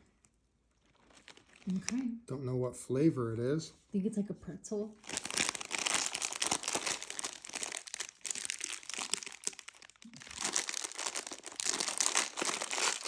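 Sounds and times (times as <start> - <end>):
plastic packet crinkling: 0.7 - 2.1, 5.0 - 13.0.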